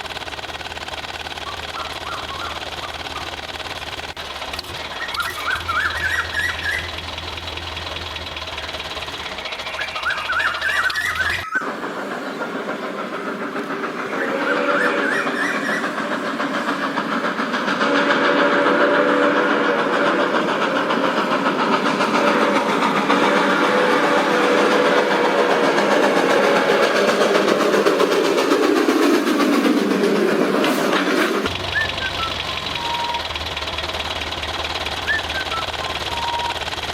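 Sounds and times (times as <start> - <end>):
small engine rattling: 0.0 - 36.9.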